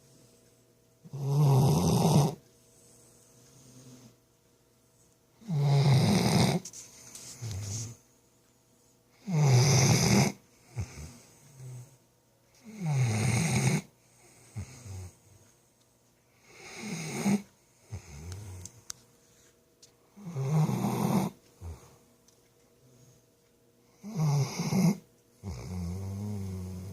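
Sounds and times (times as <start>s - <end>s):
quiet breath: 0.0s - 1.2s, 2.2s - 5.7s, 6.4s - 9.3s, 10.2s - 12.8s, 13.7s - 26.9s
loud snoring: 1.0s - 2.4s, 5.4s - 6.6s, 9.2s - 11.9s, 12.6s - 13.9s, 16.5s - 18.6s, 20.2s - 21.8s, 24.0s - 26.9s.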